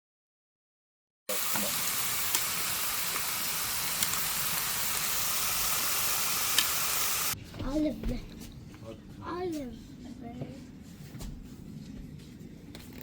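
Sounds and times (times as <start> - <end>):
meat sizzling on a grill: 1.3 - 7.4.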